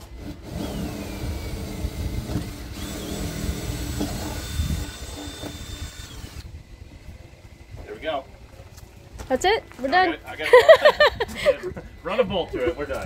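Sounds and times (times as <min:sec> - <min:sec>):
power drill whining: 0:00.0 - 0:07.6.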